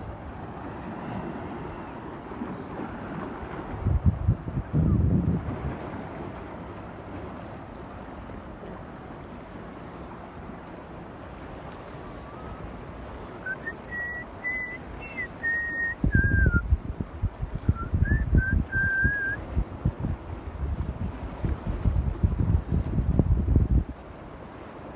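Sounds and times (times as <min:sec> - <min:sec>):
wind buffeting microphone: 0:00.0 - 0:06.7, 0:12.0 - 0:24.1
wind and surf hiss: 0:00.0 - 0:24.9
person whistling a tune: 0:13.4 - 0:16.7, 0:17.7 - 0:19.4.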